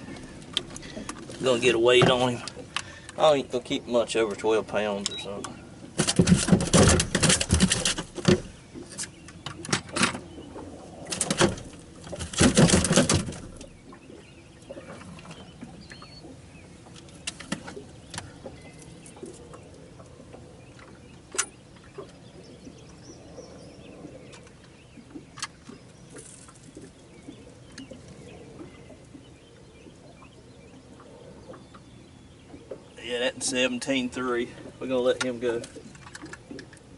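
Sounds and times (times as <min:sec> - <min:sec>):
rustling and knocking of fish: 0:05.9 - 0:14.2, 0:16.8 - 0:22.2, 0:24.3 - 0:30.0
faint bird chirps: 0:13.9 - 0:16.7.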